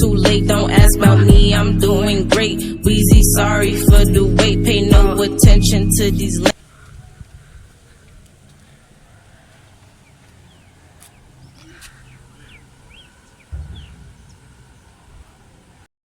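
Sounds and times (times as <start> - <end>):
small birds chirping: 6.4 - 15.9
low thump: 13.5 - 14.5
low rumble: 13.5 - 15.3.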